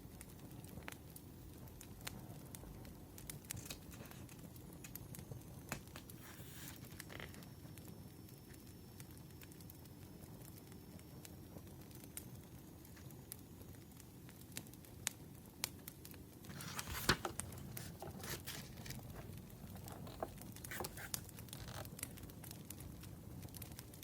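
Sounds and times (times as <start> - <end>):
paper rustling and crinkling: 3.4 - 5.0, 5.6 - 7.4, 16.5 - 22.3
firewood crackling and popping: 14.2 - 24.0.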